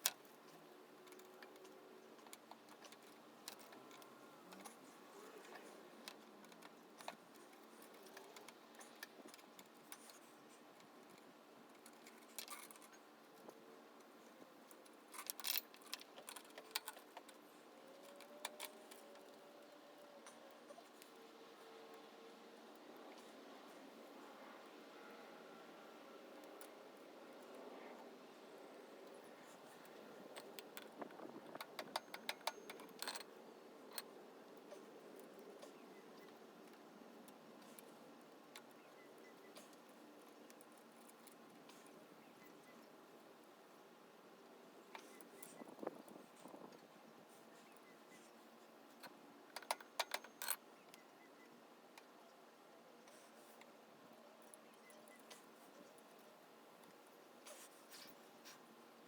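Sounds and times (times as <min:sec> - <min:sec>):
small metallic clicks and taps: 0:48.9 - 0:51.0.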